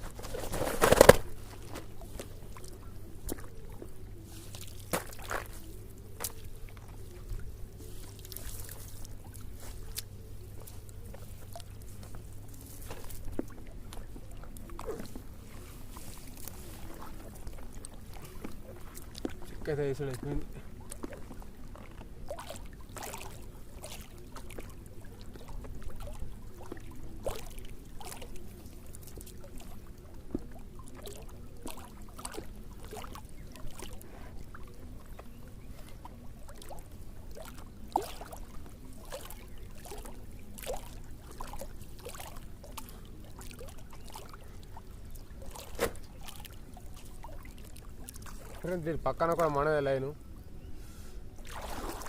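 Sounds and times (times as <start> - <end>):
net knocks and clicks: 0.2 - 1.8
water splashing and dripping: 15.9 - 34.0, 36.0 - 49.6, 51.4 - 52.0.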